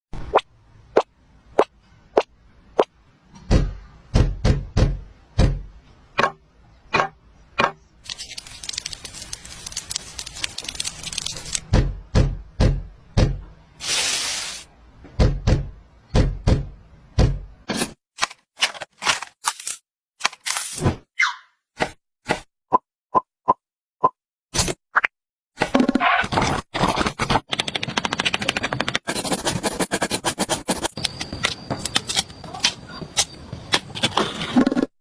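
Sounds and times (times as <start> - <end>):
short loud hiss: 13.8 - 14.7.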